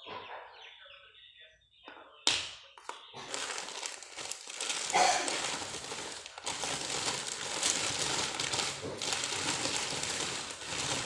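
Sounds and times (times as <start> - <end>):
packaging crinkling: 3.2 - 11.0.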